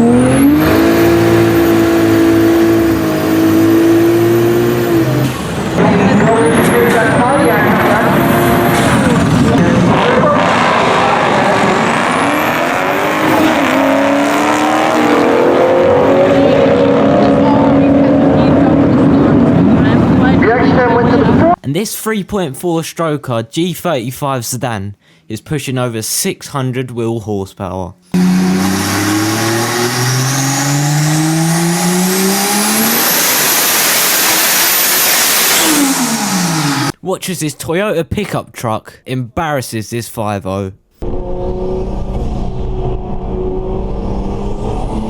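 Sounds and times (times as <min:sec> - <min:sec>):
engine accelerating: 0:00.0 - 0:21.6, 0:28.1 - 0:37.0, 0:41.0 - 0:45.0.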